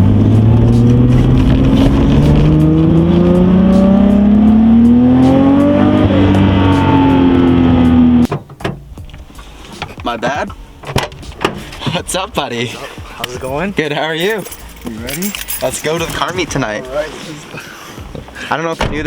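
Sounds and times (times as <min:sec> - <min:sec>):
car engine accelerating: 0:00.0 - 0:08.3.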